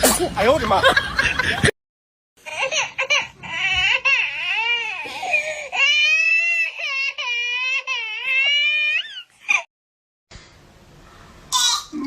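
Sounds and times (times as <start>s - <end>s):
baby crying: 2.4s - 9.7s.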